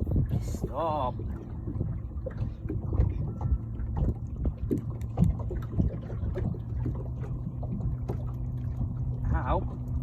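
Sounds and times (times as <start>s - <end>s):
water lapping against boat hull: 0.0s - 10.0s
wind rumble on microphone: 0.0s - 10.0s.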